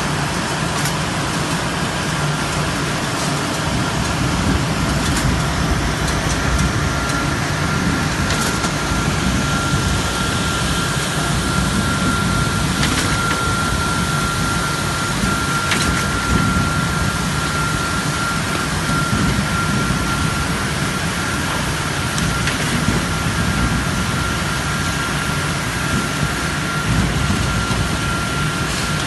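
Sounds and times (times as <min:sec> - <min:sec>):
loud machine noise: 0:00.0 - 0:29.0
faint high whine: 0:06.4 - 0:29.0.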